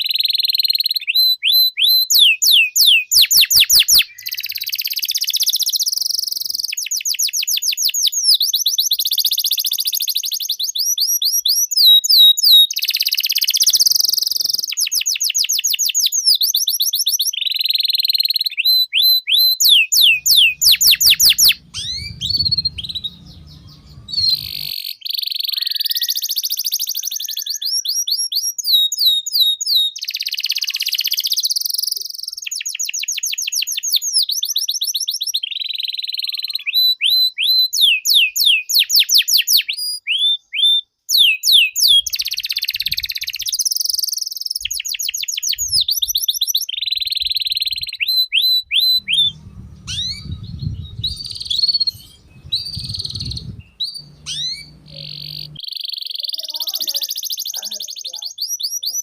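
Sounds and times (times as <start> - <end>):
canary singing: 0.7 - 7.0, 18.5 - 31.3, 45.6 - 59.0.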